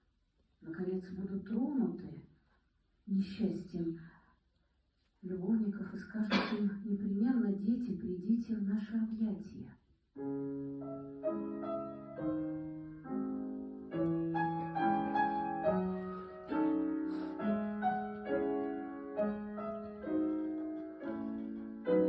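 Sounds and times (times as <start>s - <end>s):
slow piano playing: 10.2s - 22.0s.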